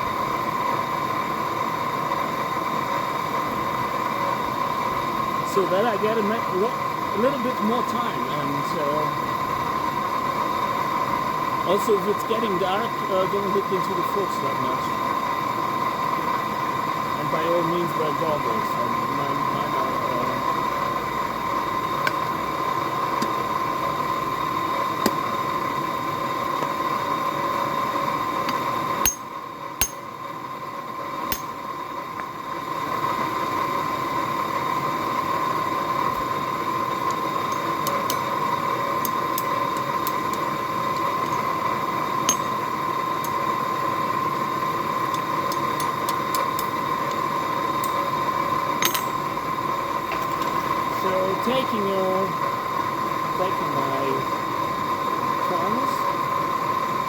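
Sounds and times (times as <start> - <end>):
forge blower whining: 0.0 - 57.0.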